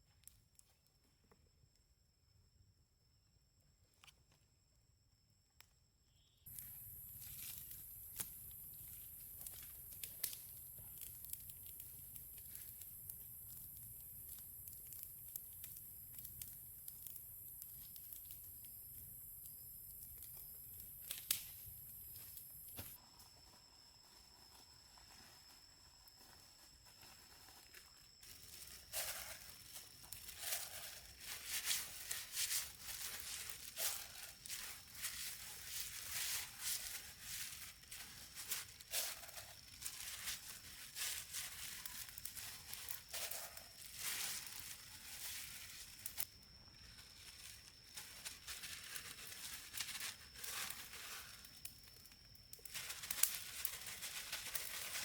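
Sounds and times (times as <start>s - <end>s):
crinkling rustling handling: 24.2s - 46.0s.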